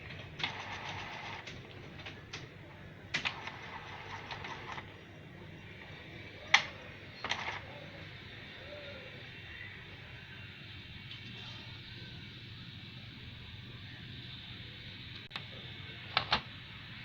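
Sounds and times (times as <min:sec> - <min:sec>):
printer mechanism rattling: 0:00.0 - 0:02.5, 0:03.1 - 0:04.9, 0:06.5 - 0:07.7
printer sharp clicks: 0:03.2 - 0:04.9.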